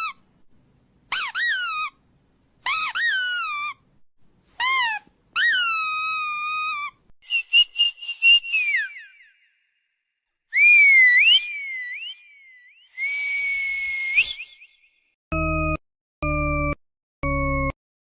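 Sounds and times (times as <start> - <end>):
squeaky whistle-like calls: 0.0 - 0.2, 1.1 - 2.0, 2.6 - 3.8, 4.5 - 15.0.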